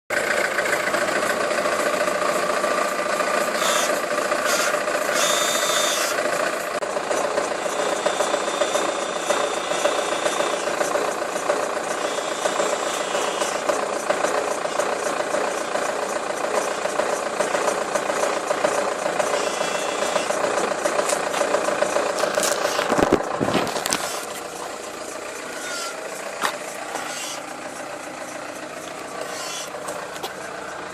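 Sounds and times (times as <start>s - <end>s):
car axle humming: 0.1s - 30.9s
rattling: 0.8s - 30.9s.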